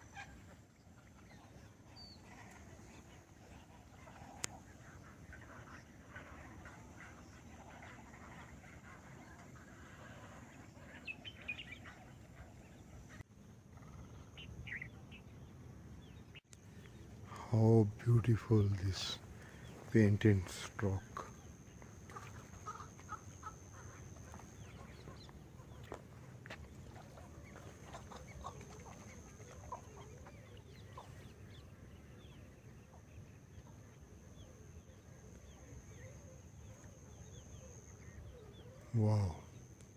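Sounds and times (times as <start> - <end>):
birds clucking: 0.0 - 39.9
bird chirps: 10.2 - 13.2, 13.8 - 17.3.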